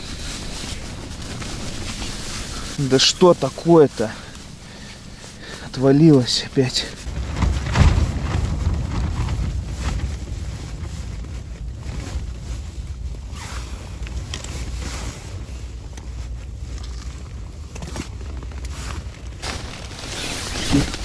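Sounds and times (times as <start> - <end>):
wind buffeting microphone: 6.5 - 16.6.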